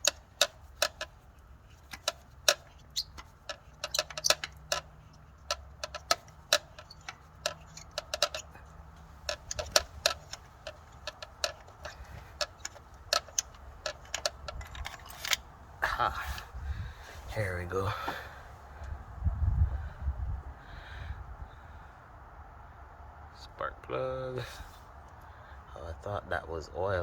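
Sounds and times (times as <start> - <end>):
ratchet wrench clicking: 0.0 - 15.4.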